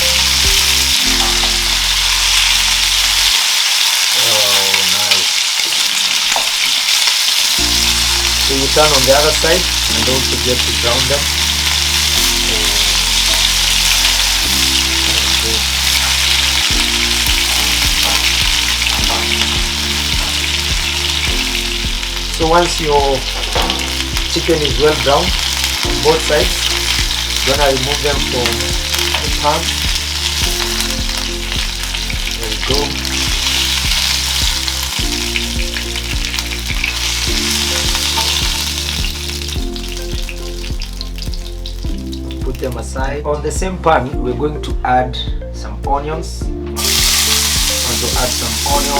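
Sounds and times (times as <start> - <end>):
background music with a beat: 0.0 - 3.3, 7.6 - 48.9
chicken sizzling in hot oil: 0.0 - 42.9, 46.8 - 48.9.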